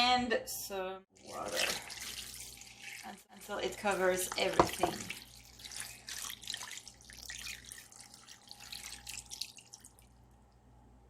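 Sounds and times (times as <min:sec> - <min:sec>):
water pouring into pot: 0:01.2 - 0:10.3.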